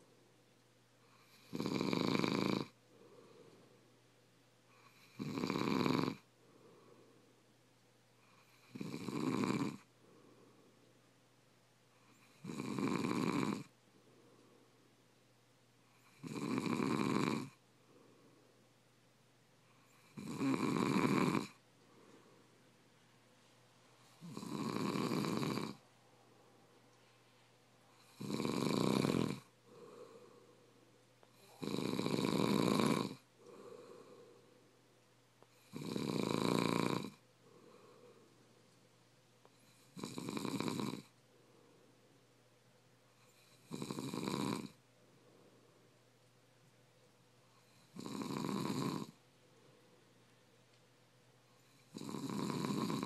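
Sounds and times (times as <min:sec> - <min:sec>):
man snoring: 0:01.1 - 0:02.8, 0:04.8 - 0:06.3, 0:08.3 - 0:09.9, 0:12.1 - 0:13.7, 0:16.0 - 0:17.6, 0:19.8 - 0:21.6, 0:24.2 - 0:25.8, 0:27.9 - 0:30.4, 0:31.3 - 0:34.4, 0:35.5 - 0:38.2, 0:39.6 - 0:41.1, 0:43.3 - 0:44.8, 0:47.6 - 0:49.2, 0:51.6 - 0:53.0
faint breathing: 0:02.7 - 0:05.2, 0:06.2 - 0:07.5, 0:09.7 - 0:11.0, 0:13.7 - 0:15.1, 0:17.5 - 0:18.8, 0:21.2 - 0:28.4, 0:29.1 - 0:32.0, 0:33.0 - 0:35.8, 0:37.0 - 0:40.0, 0:41.1 - 0:42.4, 0:44.8 - 0:46.2.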